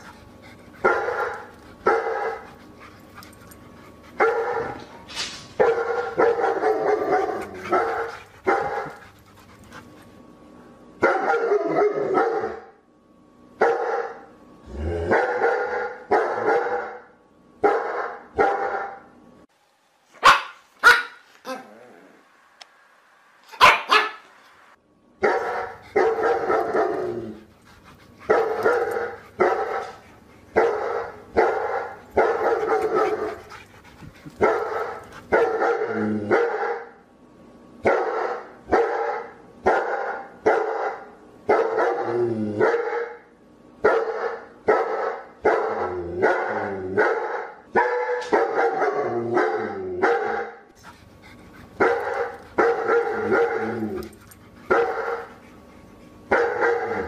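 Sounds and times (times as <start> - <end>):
dog barking: 0.8 - 2.4, 4.2 - 4.8, 5.6 - 9.0, 11.0 - 12.7, 13.6 - 14.2, 15.1 - 19.0, 20.2 - 21.2, 23.5 - 24.3, 25.2 - 27.1, 30.6 - 33.4, 34.4 - 37.0, 37.8 - 43.2, 43.8 - 50.6, 51.8 - 53.8, 54.7 - 55.3, 56.3 - 57.0.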